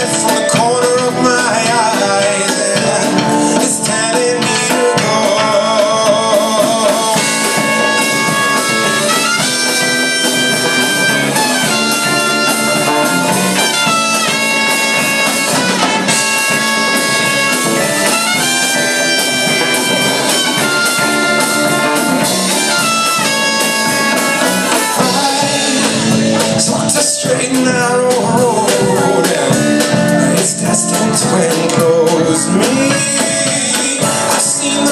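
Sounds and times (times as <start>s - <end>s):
lead line of held notes: 0.0s - 34.9s
live rock band instrumental: 0.0s - 34.9s.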